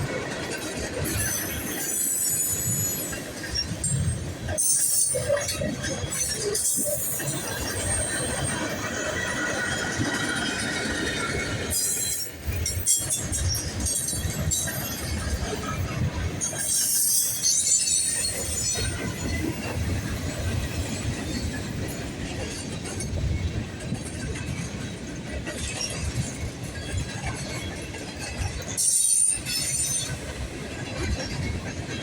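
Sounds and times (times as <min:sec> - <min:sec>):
train wheels rumbling on rail: 0:00.0 - 0:32.0.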